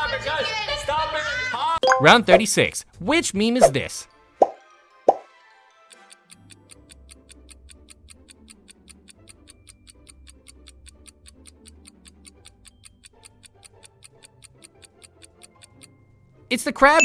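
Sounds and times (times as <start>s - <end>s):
countdown timer ticking: 1.8s - 2.5s.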